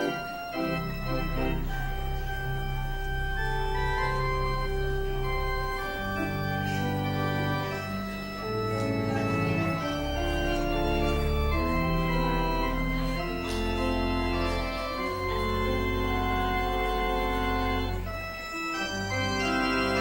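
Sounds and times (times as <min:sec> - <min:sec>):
organ playing slow chords: 0:00.0 - 0:20.0.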